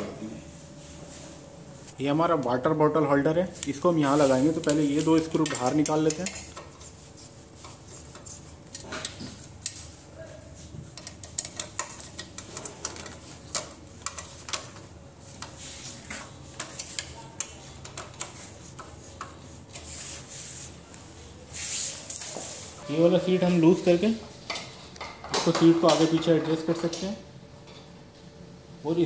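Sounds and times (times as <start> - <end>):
metal clicks taps and scraping: 4.6 - 6.8, 10.9 - 19.9.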